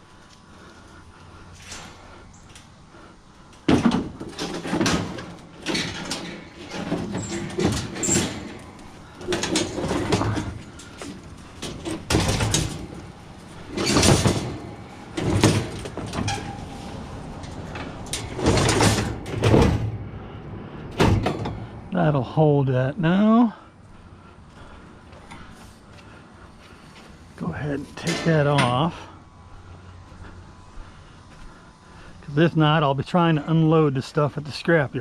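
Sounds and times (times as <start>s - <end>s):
scrap metal clanking and scraping: 3.6s - 22.3s, 27.0s - 29.1s.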